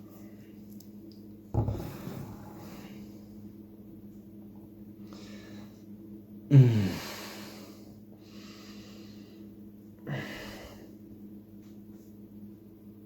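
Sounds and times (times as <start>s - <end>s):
breathing: 5.0s - 5.9s, 6.9s - 11.0s.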